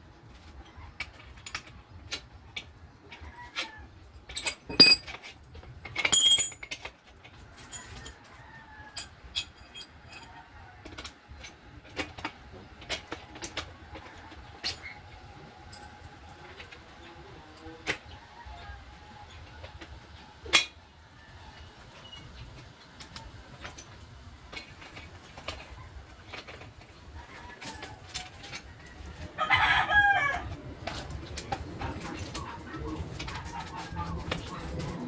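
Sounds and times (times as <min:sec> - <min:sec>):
metal tools clinking: 0:04.4 - 0:05.3, 0:06.0 - 0:06.8, 0:07.6 - 0:08.2.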